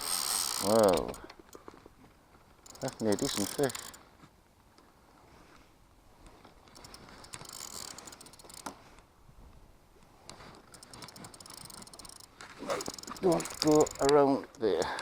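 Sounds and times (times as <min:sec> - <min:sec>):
fishing reel clicking: 0:00.0 - 0:01.7, 0:02.6 - 0:04.0, 0:06.7 - 0:08.8, 0:10.6 - 0:14.2, 0:14.8 - 0:15.0.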